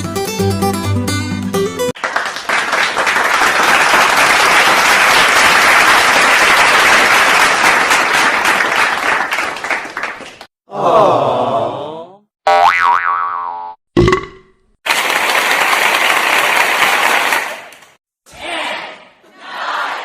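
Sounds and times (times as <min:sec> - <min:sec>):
crowd applauding: 0:02.0 - 0:10.5, 0:14.9 - 0:18.0
springy boing effect: 0:12.5 - 0:14.6.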